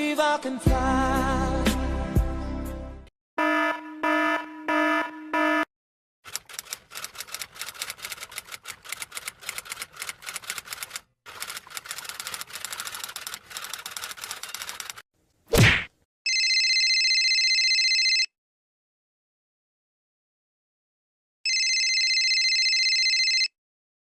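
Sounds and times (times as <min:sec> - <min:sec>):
rapid typewriter key clicks: 0:06.3 - 0:15.0.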